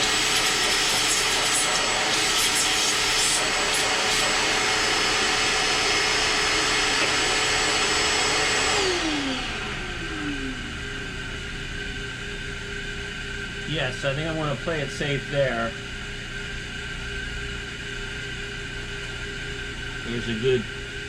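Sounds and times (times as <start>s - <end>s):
electric motor whining: 0.0s - 11.2s.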